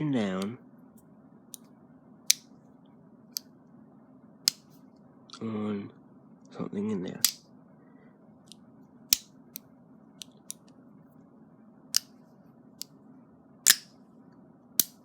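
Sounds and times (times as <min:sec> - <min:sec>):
knife mechanism clicking: 0:14.8 - 0:15.0.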